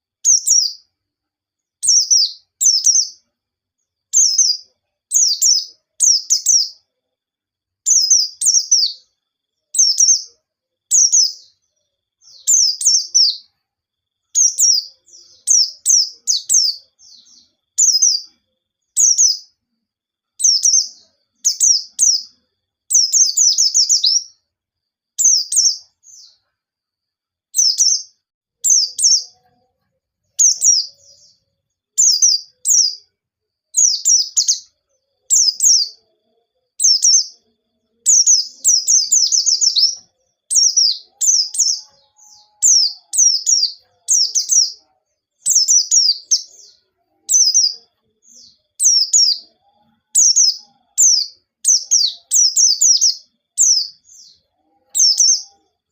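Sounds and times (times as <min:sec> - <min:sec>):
bird high-pitched chirping: 0:00.2 - 0:00.9, 0:01.8 - 0:03.3, 0:04.1 - 0:06.9, 0:07.8 - 0:09.1, 0:09.7 - 0:11.6, 0:12.2 - 0:13.6, 0:14.3 - 0:19.6, 0:20.4 - 0:24.4, 0:25.2 - 0:26.5, 0:27.5 - 0:29.7, 0:30.3 - 0:33.1, 0:33.7 - 0:55.9.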